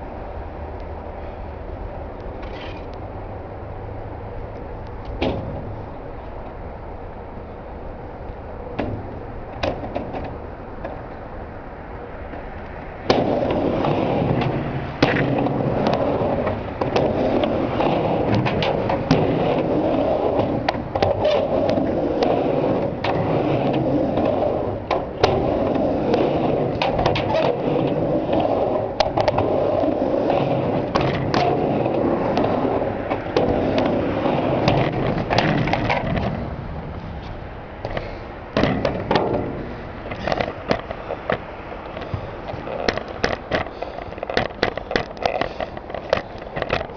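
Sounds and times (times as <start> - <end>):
skateboard wheels rolling: 0.0 - 46.9
skateboard clacks on coping: 13.1 - 36.5, 37.8 - 46.9.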